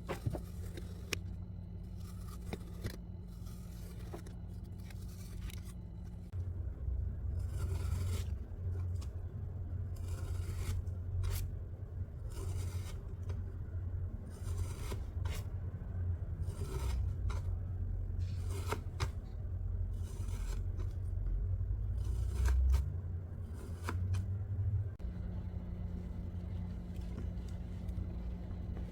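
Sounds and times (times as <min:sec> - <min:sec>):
low hum: 0:00.0 - 0:28.9.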